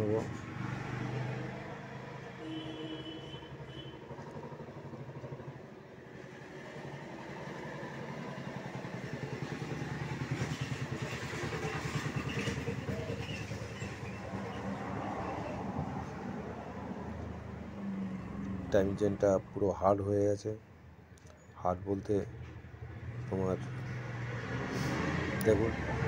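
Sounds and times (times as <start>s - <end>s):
vehicle engine running: 1.5s - 19.7s.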